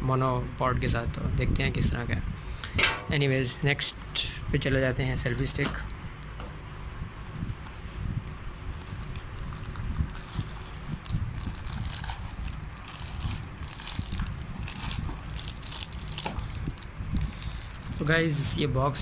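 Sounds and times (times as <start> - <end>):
packaging rustling and crinkling: 7.4 - 18.4.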